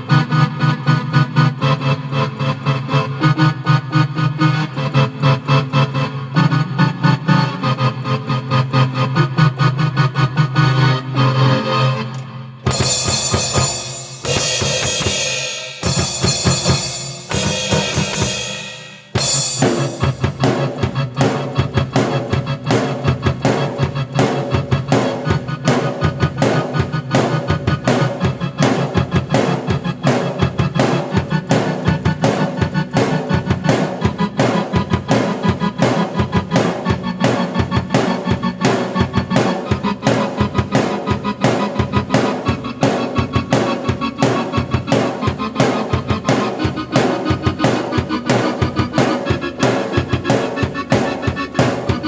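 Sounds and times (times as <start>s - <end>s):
sustained keyboard chords: 0.0s - 52.0s
kick and snare drums: 12.7s - 52.0s
quick drum hits: 12.7s - 52.0s.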